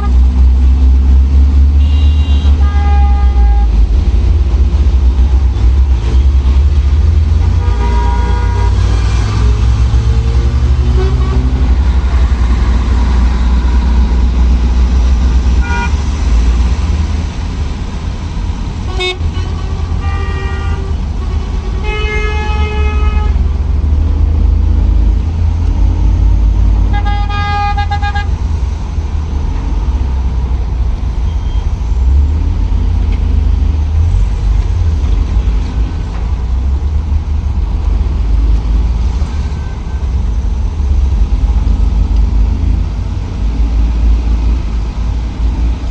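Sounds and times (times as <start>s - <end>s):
minibus engine rumbling: 0.0s - 45.9s
vehicle horns honking: 1.7s - 3.8s, 7.6s - 9.6s, 10.8s - 11.8s, 15.6s - 16.0s, 18.9s - 23.5s, 26.8s - 28.4s.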